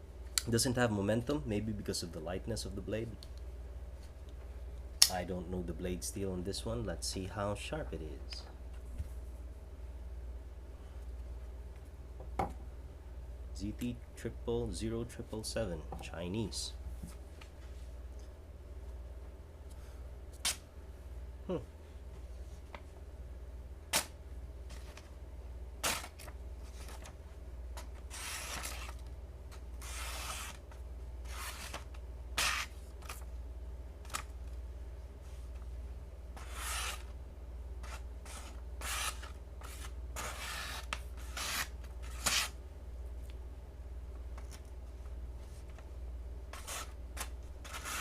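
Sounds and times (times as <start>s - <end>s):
knife slicing paper: 25.8s - 27.1s, 28.1s - 29.0s, 29.8s - 30.6s, 31.2s - 33.2s, 36.4s - 37.1s, 37.8s - 42.6s, 46.5s - 48.0s.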